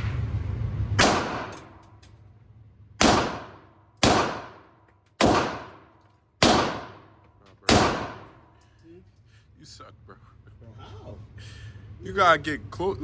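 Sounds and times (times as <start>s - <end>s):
handgun shots echoing: 1.0s - 1.8s, 3.0s - 8.5s.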